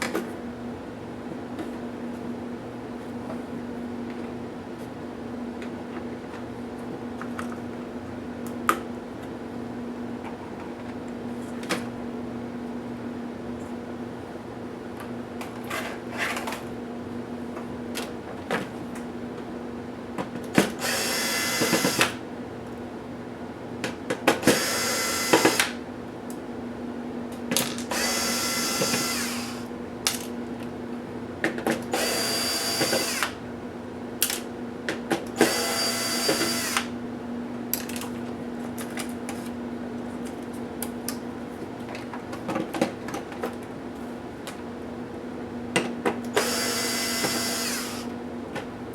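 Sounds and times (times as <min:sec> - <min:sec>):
electric screwdriver whirring: 0:20.8 - 0:22.2, 0:24.4 - 0:25.8, 0:27.9 - 0:29.7, 0:32.0 - 0:33.4, 0:35.4 - 0:36.9, 0:46.3 - 0:48.1.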